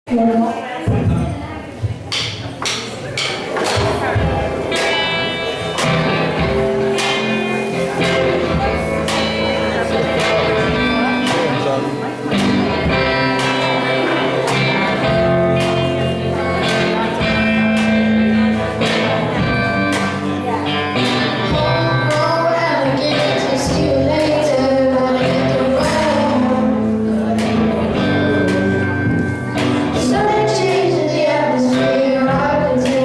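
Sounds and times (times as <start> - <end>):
guitar: 0.1 - 33.0
drum hits: 0.9 - 22.3
person singing: 20.9 - 33.0.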